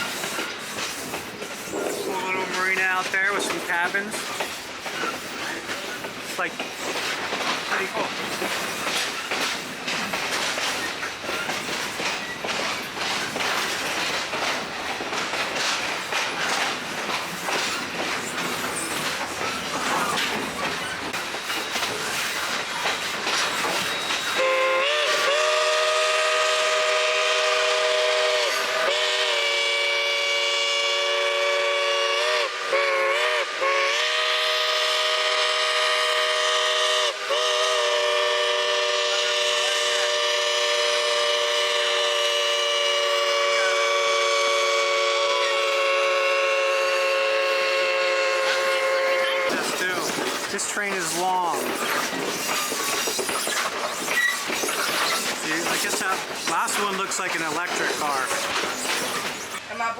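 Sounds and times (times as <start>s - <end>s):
wheels clattering over rail joints: 0.0s - 25.3s, 45.5s - 59.8s
train car rumble: 0.0s - 59.9s
locomotive whistle blasts: 23.8s - 50.1s.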